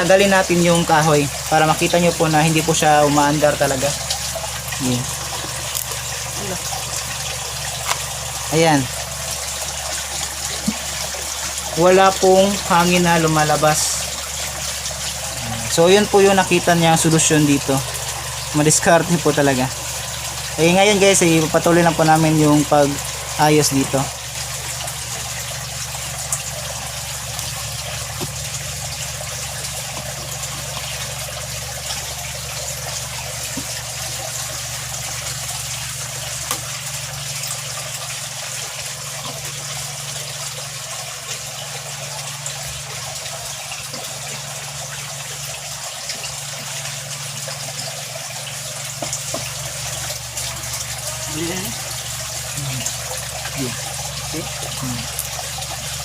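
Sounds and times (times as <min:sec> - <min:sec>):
steady low hum: 0:00.0 - 0:40.2
aquarium water bubbling: 0:00.0 - 0:56.0.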